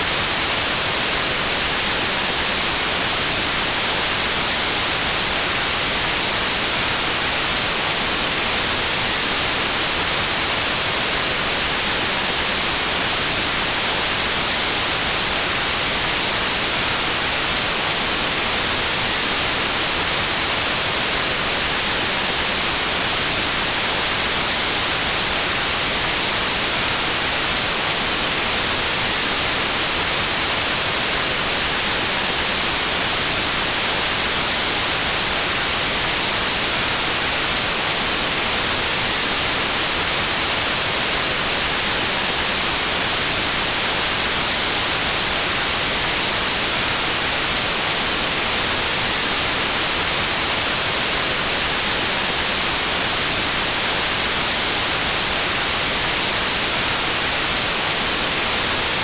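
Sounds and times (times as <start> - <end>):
white noise hiss: 0.0 - 59.0.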